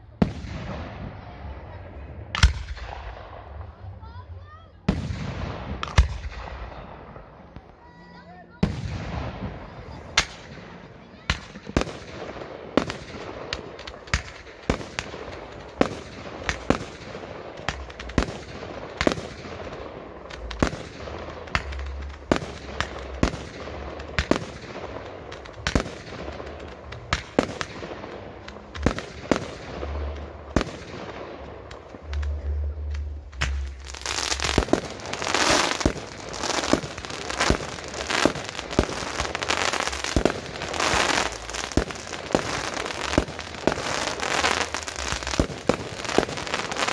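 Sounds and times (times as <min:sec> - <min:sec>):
dense firework crackling: 0:00.0 - 0:46.9
firework shells bursting: 0:11.3 - 0:46.9.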